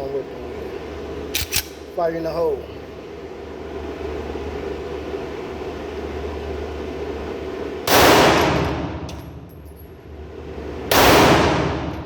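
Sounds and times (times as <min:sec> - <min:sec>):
shooting range background noise: 0:00.0 - 0:03.9, 0:06.8 - 0:12.0
pistol shot: 0:07.9 - 0:09.0, 0:10.9 - 0:12.0.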